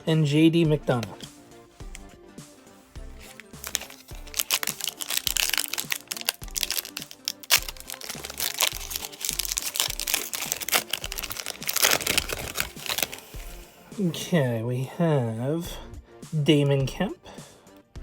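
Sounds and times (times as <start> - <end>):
background music with bass beat: 0.0 - 4.4
foil wrapper crinkling and tearing: 3.2 - 13.6.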